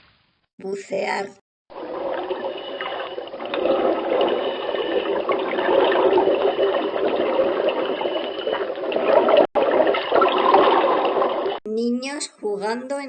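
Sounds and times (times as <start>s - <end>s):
underwater water churn: 1.7s - 11.6s.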